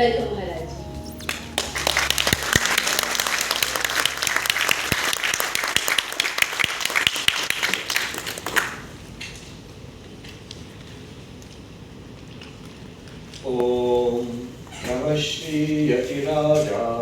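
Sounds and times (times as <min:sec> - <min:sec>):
audience applauding: 0:01.1 - 0:09.0.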